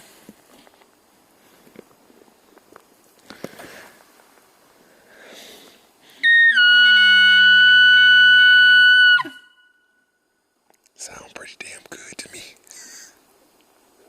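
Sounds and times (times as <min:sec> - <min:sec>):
elk bugling: 0:06.2 - 0:09.7.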